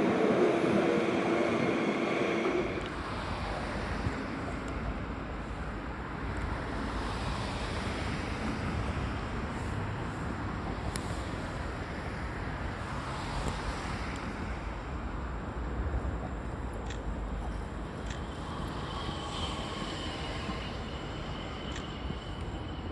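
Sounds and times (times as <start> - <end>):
faint ticks: 16.0 - 20.8, 21.6 - 22.7.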